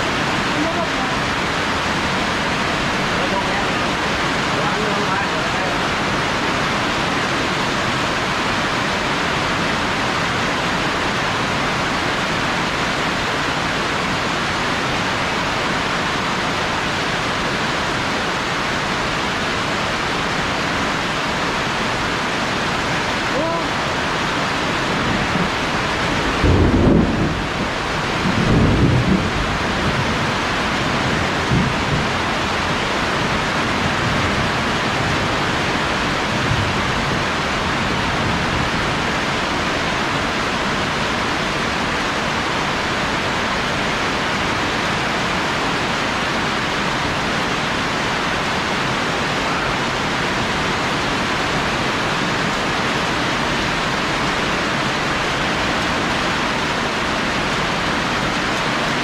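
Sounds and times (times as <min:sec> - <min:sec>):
heavy rain pouring: 0:00.0 - 0:59.0
low thunder rumbles: 0:24.9 - 0:39.0.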